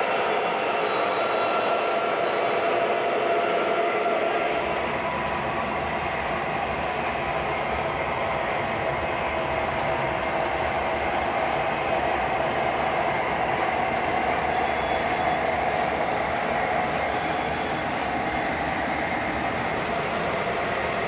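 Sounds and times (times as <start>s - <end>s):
model train rumbling on track: 4.3s - 21.0s.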